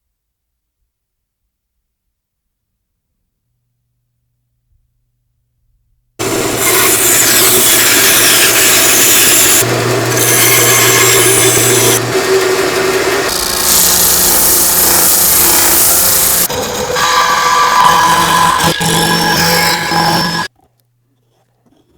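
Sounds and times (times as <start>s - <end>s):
power sander grinding: 6.2s - 20.5s.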